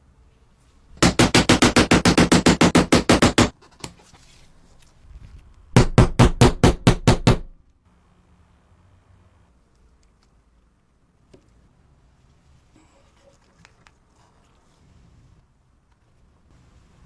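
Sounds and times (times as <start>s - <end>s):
rapid mechanical clacks: 1.0s - 3.5s.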